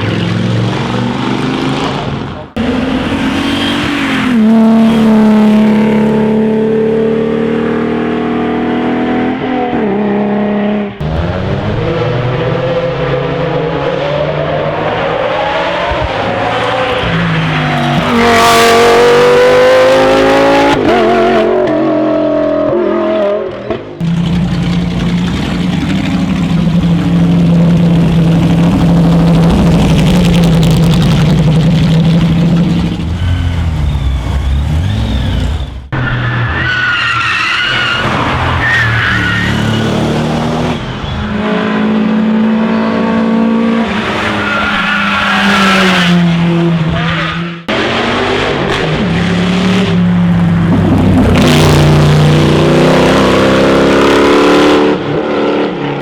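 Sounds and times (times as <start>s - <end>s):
racing car engines at high revs: 0.0s - 56.0s
tyres squealing: 32.8s - 41.4s.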